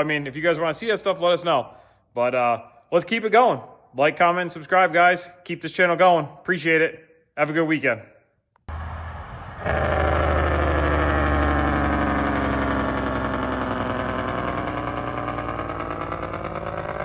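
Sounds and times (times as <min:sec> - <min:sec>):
truck diesel engine running: 0:08.7 - 0:17.0.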